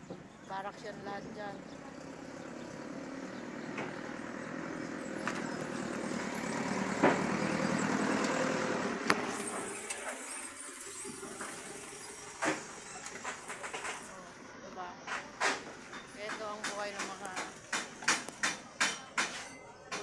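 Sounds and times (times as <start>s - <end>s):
vehicle engine passing by: 1.5s - 12.2s.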